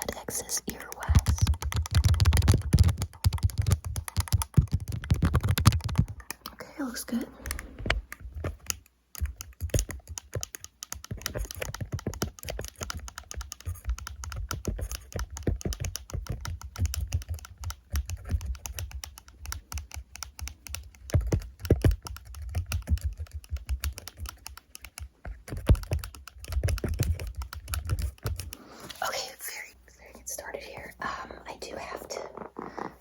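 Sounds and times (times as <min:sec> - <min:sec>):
tapping and clicking on microphone: 0:00.0 - 0:06.6, 0:07.4 - 0:28.6.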